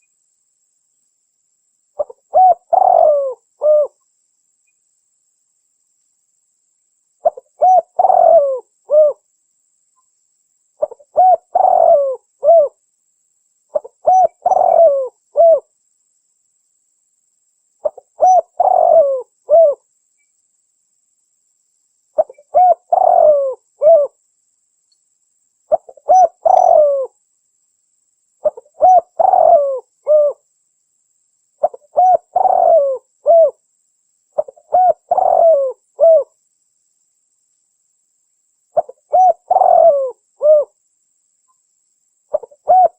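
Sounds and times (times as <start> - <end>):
dove cooing: 2.0 - 4.0, 7.2 - 9.2, 10.8 - 12.8, 13.7 - 15.7, 17.8 - 19.8, 22.2 - 24.2, 25.7 - 27.2, 28.4 - 30.4, 31.6 - 33.6, 34.4 - 36.4, 38.8 - 40.8, 42.3 - 42.9.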